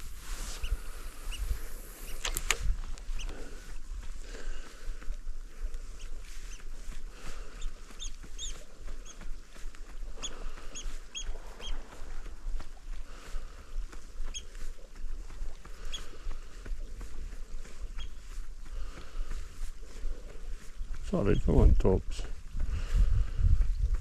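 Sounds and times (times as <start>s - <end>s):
wind rumble on microphone: 0.0s - 24.0s
short high bird calls: 7.6s - 9.2s.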